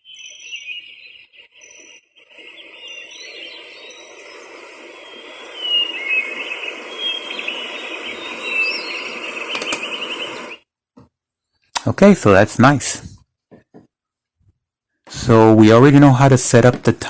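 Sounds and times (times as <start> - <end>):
alarm clock bird chirps: 0.0 - 10.6
outdoor ambience hiss: 0.0 - 13.3, 15.1 - 17.0.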